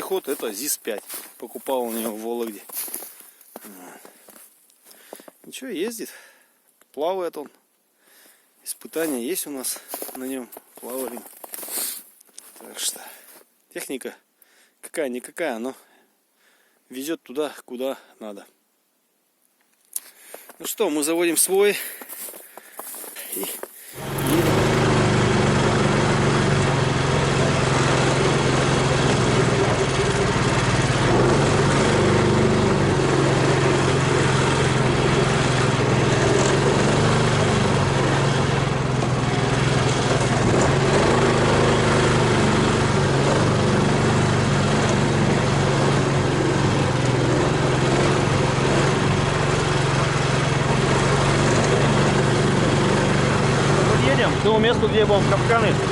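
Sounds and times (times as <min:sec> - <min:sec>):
vehicle engine running steadily: 0:23.9 - 0:55.9.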